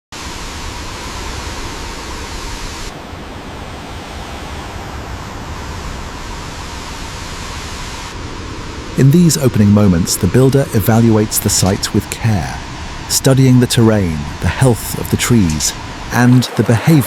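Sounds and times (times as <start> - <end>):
waterfall rushing: 0.1 - 17.0.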